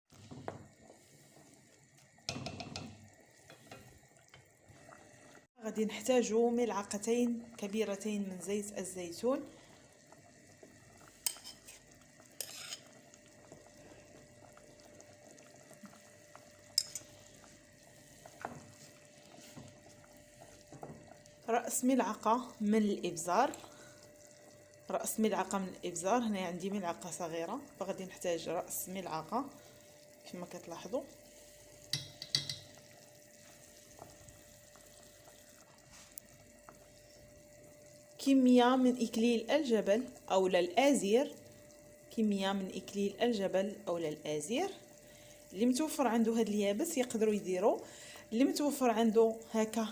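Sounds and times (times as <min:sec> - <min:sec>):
faint steady hum: 0:00.2 - 0:49.9
metal spoon clinking on pot: 0:16.8 - 0:17.1, 0:31.9 - 0:32.7.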